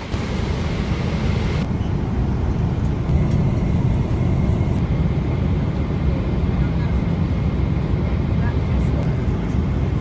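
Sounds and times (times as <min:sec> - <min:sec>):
airliner cabin drone: 0:00.0 - 0:10.0.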